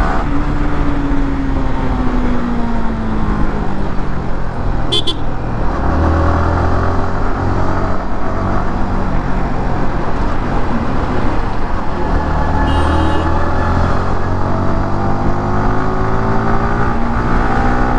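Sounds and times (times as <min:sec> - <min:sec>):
road and wind noise: 0:00.0 - 0:17.9
motorcycle engine running: 0:04.8 - 0:05.8.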